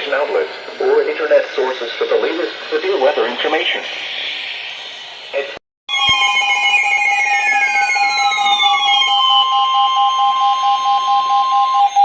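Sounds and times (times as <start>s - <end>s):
steady warning alarm tone: 5.9s - 12.0s.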